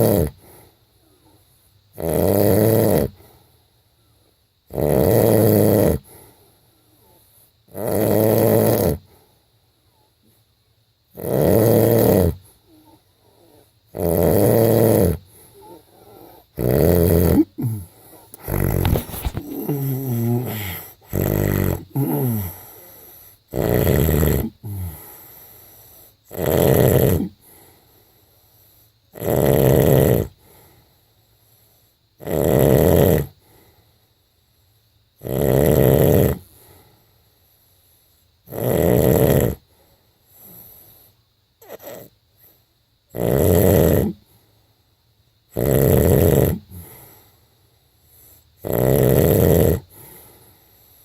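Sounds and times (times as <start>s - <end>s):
man snoring: 0.0s - 0.6s, 2.0s - 3.2s, 4.7s - 6.2s, 7.7s - 9.1s, 11.1s - 25.6s, 26.2s - 27.7s, 29.1s - 30.6s, 32.2s - 33.5s, 35.2s - 36.6s, 38.5s - 39.6s, 41.6s - 42.1s, 43.1s - 44.2s, 45.5s - 47.2s, 48.3s - 50.5s.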